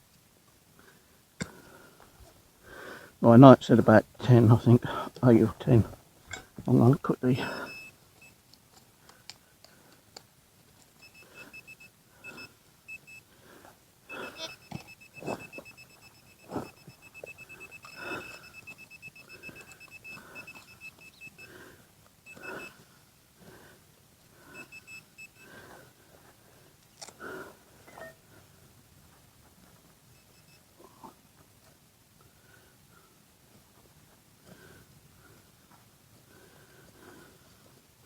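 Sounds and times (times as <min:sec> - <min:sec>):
metal detector beeping: 0:06.8 - 0:08.4, 0:11.0 - 0:13.3, 0:14.1 - 0:21.5, 0:22.2 - 0:22.8, 0:24.5 - 0:25.6, 0:30.1 - 0:30.7.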